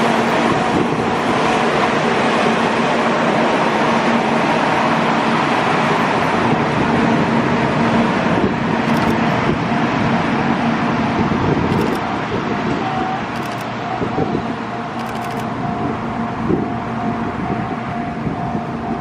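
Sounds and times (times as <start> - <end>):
train rumbling over crossing: 0.0 - 19.0.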